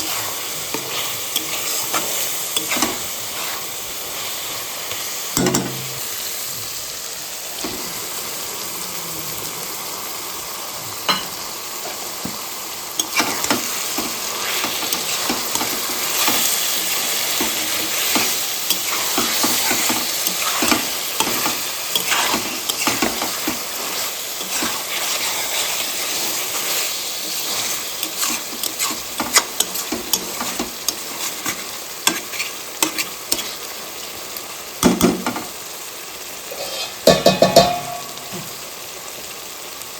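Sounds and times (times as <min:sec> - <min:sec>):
spatula scraping a pan: 0:00.0 - 0:04.4, 0:13.0 - 0:33.6, 0:36.5 - 0:37.9
meat sizzling in hot oil: 0:00.0 - 0:39.9.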